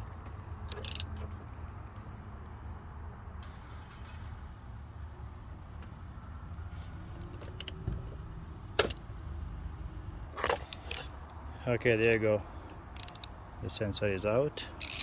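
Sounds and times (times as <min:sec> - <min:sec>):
metal clicks and clinks: 0:00.7 - 0:01.2, 0:10.4 - 0:11.1, 0:13.0 - 0:13.3, 0:14.8 - 0:15.0.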